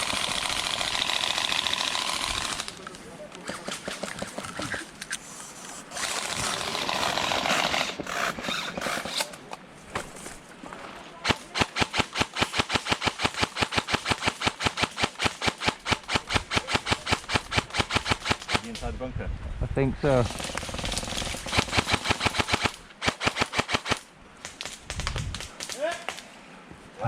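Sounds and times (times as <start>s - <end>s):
rustling: 0.0s - 18.8s
airsoft gun firing burst: 11.2s - 18.7s, 20.2s - 24.0s.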